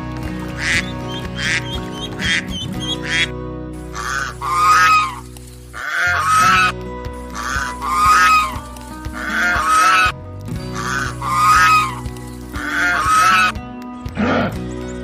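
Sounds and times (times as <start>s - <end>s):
background music: 0.0s - 15.0s
waterfowl calling: 0.6s - 3.3s, 3.9s - 13.6s.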